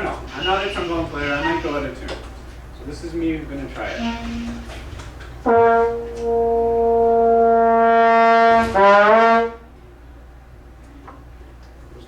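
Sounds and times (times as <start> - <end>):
trombone holding a note: 3.9 - 9.6.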